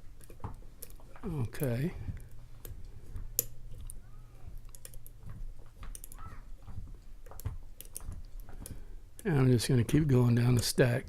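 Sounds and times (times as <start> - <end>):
lock pick clicking and scraping: 7.2 - 9.3.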